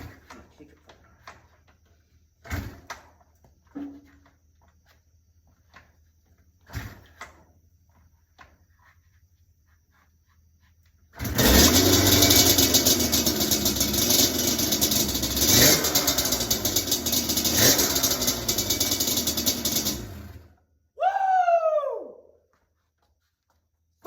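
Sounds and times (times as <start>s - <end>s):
two-stroke engine running raspy: 11.2s - 20.4s.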